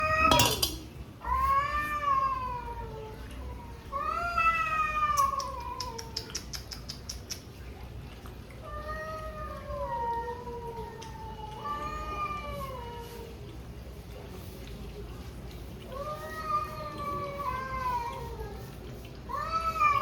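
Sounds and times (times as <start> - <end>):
cats meowing: 0.0 - 7.0, 8.6 - 13.5, 15.9 - 20.0.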